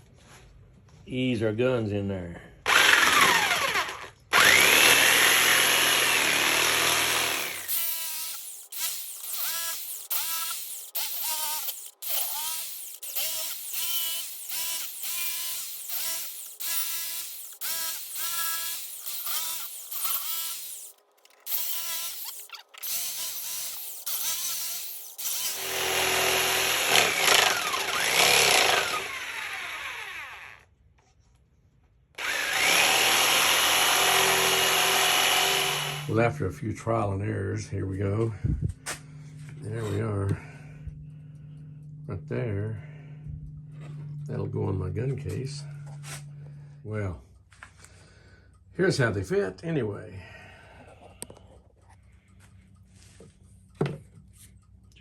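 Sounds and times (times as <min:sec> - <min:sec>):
power tool cutting plywood: 0:02.7 - 0:30.6, 0:32.2 - 0:36.2.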